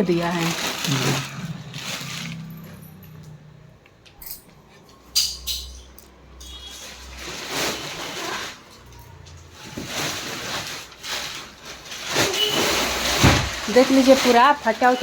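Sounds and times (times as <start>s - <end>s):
mattress and plastic wrapping rustling: 0.0s - 3.1s, 6.4s - 15.0s.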